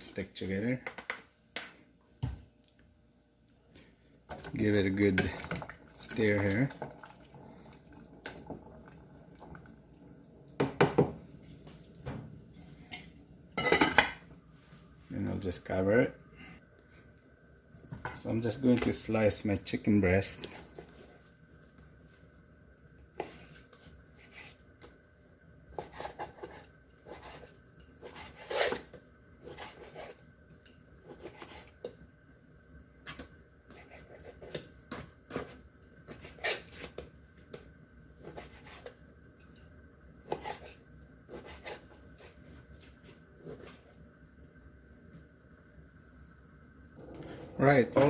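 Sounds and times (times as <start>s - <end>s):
knife scraping: 25.8s - 30.2s, 31.0s - 31.8s, 33.7s - 34.6s, 35.3s - 37.0s, 38.2s - 39.0s, 40.2s - 42.4s.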